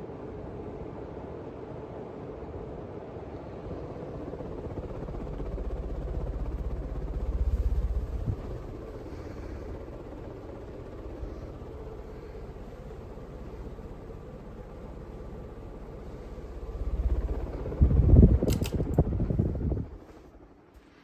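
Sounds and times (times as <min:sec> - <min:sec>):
ceiling fan motor hum: 0:00.0 - 0:21.0
fan blades whooshing air: 0:00.0 - 0:21.0.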